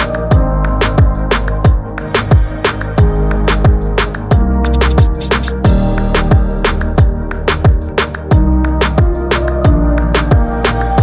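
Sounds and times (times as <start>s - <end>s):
kick drum: 0.3s - 10.5s
hi-hats: 0.8s - 8.2s.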